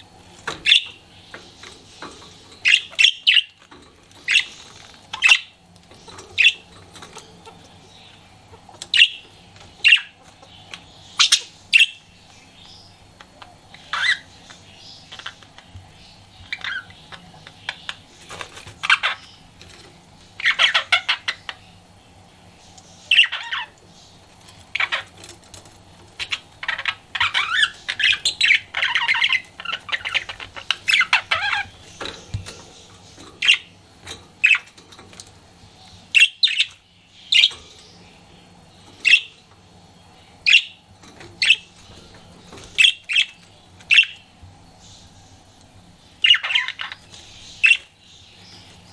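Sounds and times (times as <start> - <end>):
budgerigar chattering and squawking: 2.5 - 3.6, 4.2 - 5.6, 9.8 - 10.2, 13.7 - 15.6, 20.4 - 21.6, 23.0 - 23.8, 26.2 - 33.8, 36.1 - 37.6, 40.4 - 40.8, 46.2 - 48.0.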